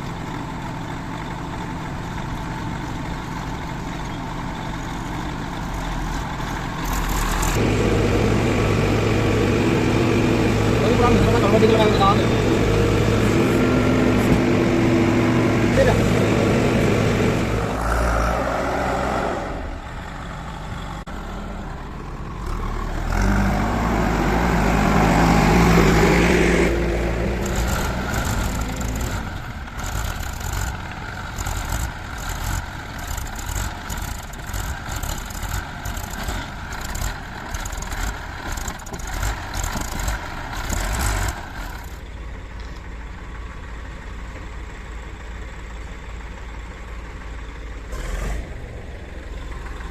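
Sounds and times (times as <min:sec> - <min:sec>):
heavy diesel engine under load: 0:00.0 - 0:49.9.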